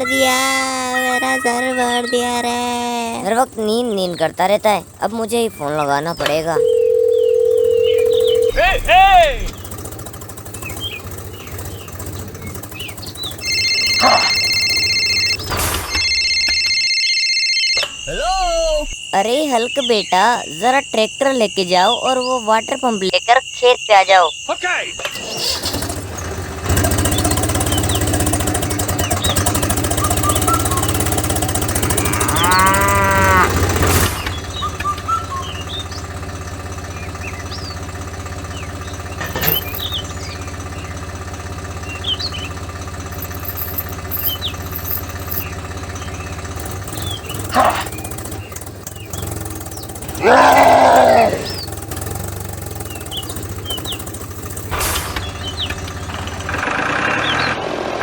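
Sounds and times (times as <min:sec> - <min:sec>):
bird chirps: 0:00.0 - 0:15.6, 0:17.8 - 0:25.5, 0:28.8 - 0:32.8, 0:34.2 - 0:41.0, 0:41.7 - 0:42.6, 0:52.8 - 0:56.4
low engine hum: 0:00.0 - 0:16.1, 0:25.6 - 0:57.7
cow mooing: 0:13.8 - 0:14.6, 0:31.8 - 0:33.9, 0:50.2 - 0:51.6.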